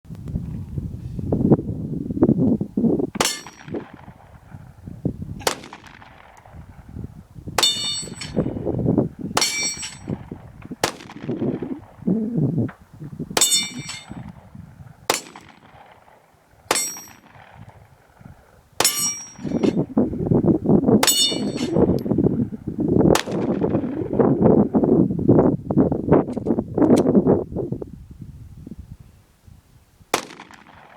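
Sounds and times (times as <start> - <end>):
steel target clanging: 3.2 - 3.8, 7.6 - 8.6, 9.4 - 10.3, 13.4 - 14.3, 15.1 - 15.6, 16.7 - 17.3, 18.8 - 19.9, 21.0 - 22.1
pistol shots: 3.2 - 4.4, 5.4 - 6.6, 10.8 - 11.7, 15.1 - 18.1, 23.2 - 23.8, 30.2 - 30.9.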